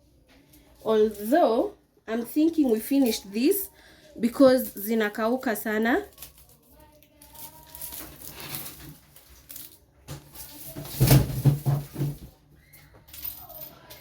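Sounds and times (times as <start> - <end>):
produce rustling and knocking: 7.3 - 12.4.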